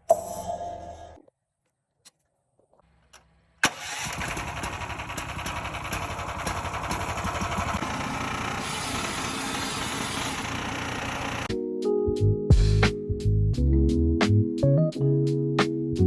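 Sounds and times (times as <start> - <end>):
small gasoline engine running: 3.7 - 11.5.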